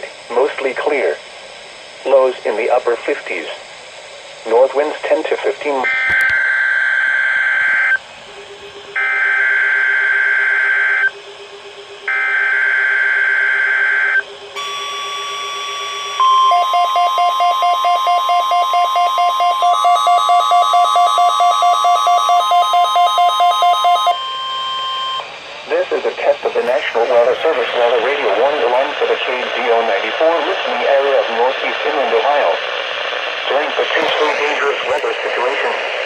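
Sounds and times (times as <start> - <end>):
steady warning alarm tone: 0.0 - 36.0
pulsing electronic beep: 12.1 - 25.3.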